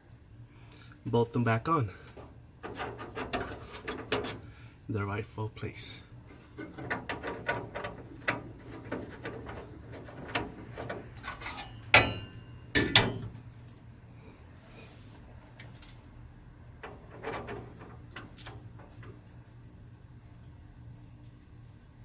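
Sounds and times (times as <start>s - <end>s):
clicks and rubbing of metal parts: 2.1s - 4.5s, 6.3s - 13.8s
sharp knocks with metallic ring: 11.9s - 13.3s.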